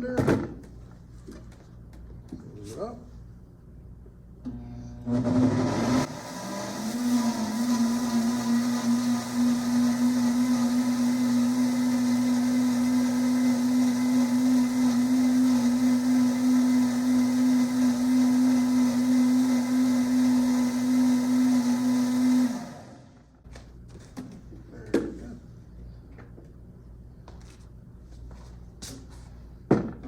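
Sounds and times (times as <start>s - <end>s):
blender running: 4.5s - 23.2s.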